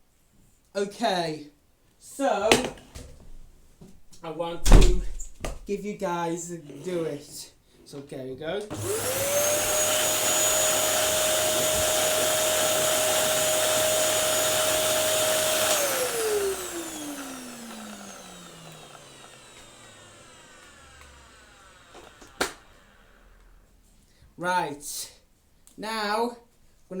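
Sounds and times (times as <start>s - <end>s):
vacuum cleaner whining: 6.6s - 7.4s, 8.6s - 23.8s
motor winding down: 8.7s - 23.7s.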